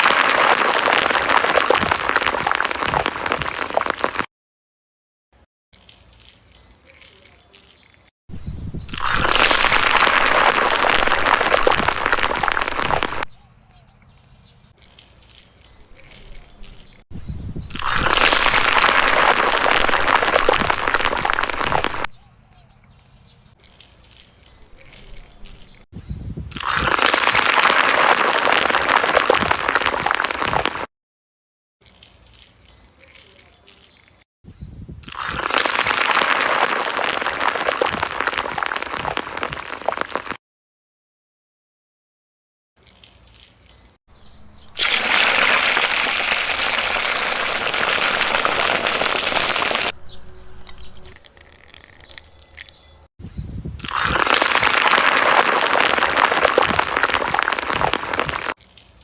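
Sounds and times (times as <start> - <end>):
water gushing: 0.0 - 4.3, 8.9 - 13.3, 17.7 - 22.1, 26.6 - 30.9, 35.1 - 40.4, 44.8 - 50.0, 53.8 - 58.6
water splashing: 0.0 - 4.3, 8.9 - 13.3, 17.7 - 22.1, 26.6 - 30.9, 35.0 - 40.4, 44.8 - 50.0, 53.8 - 58.6
food sizzling in hot oil: 44.8 - 49.9.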